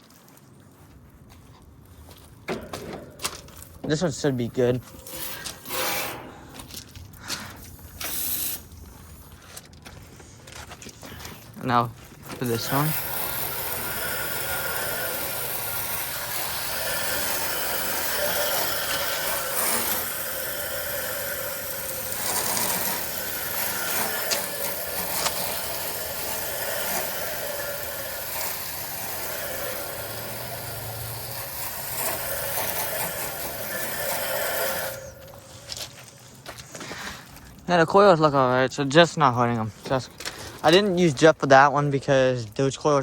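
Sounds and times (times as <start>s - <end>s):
hose water spray hissing: 2.8s - 9.3s, 11.2s - 36.4s.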